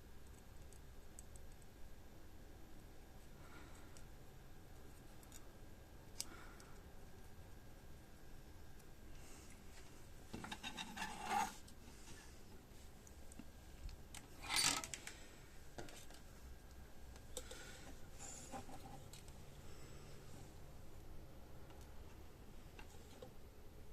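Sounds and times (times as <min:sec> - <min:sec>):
circuit board scraping: 0:10.4 - 0:11.6.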